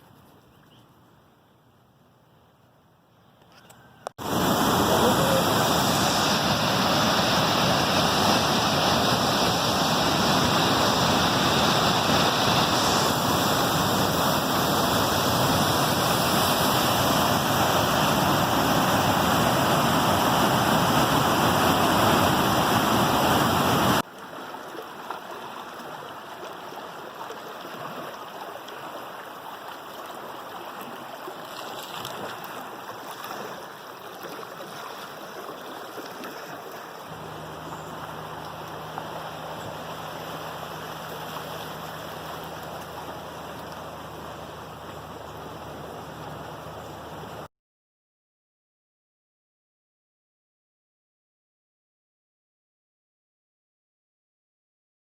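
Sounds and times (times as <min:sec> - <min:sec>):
stream roaring: 0:04.2 - 0:47.5.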